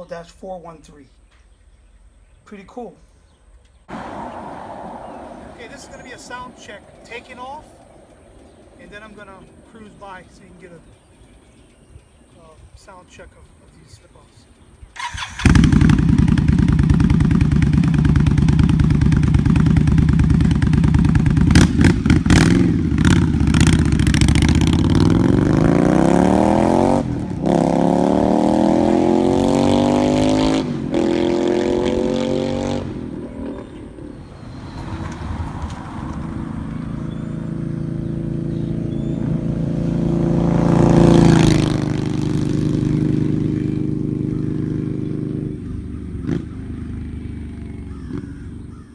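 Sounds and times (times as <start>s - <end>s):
motorcycle engine accelerating: 3.7s - 12.8s, 14.6s - 48.9s
motorcycle passing by: 3.9s - 12.3s, 14.9s - 48.9s.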